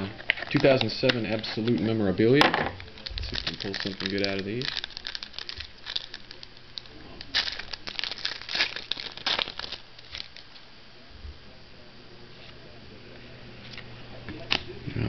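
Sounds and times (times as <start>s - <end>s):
foil wrapper tearing and crinkling: 0.0s - 2.0s, 2.8s - 10.6s.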